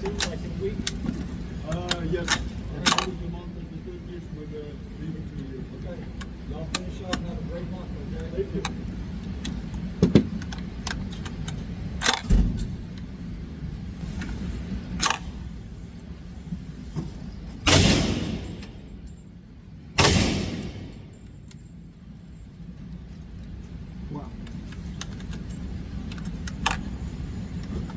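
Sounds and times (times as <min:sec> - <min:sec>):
gunshots: 0:17.7 - 0:18.8, 0:20.0 - 0:21.1.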